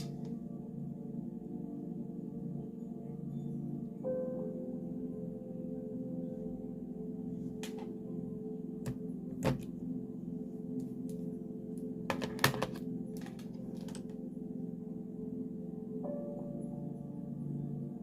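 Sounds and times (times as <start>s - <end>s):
ambient music drone: 0.0s - 18.0s
makeup tools clicking and tapping: 7.6s - 7.9s, 8.9s - 9.7s, 12.1s - 14.2s.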